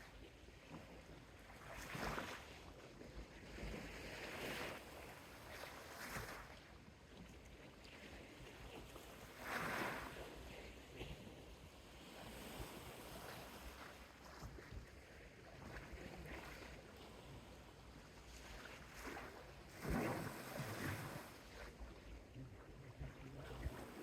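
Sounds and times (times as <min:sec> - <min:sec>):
sea waves lapping at shore: 0:00.0 - 0:24.0
water splashes: 0:18.3 - 0:24.0.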